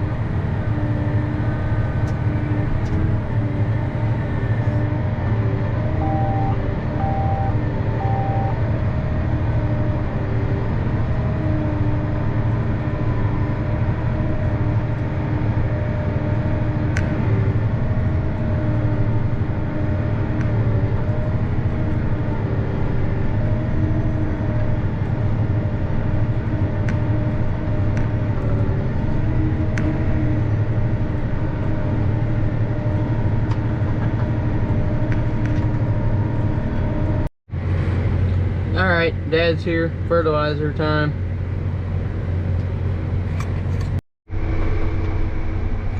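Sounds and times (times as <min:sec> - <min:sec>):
tractor engine under load: 0:00.0 - 0:45.9
short electronic beeps: 0:06.0 - 0:08.6.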